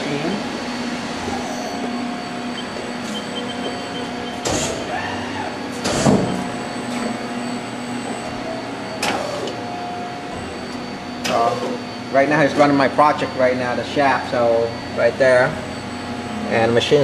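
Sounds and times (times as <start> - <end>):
lathe cutting whine: 0.0 - 17.0
machinery humming: 0.0 - 17.0.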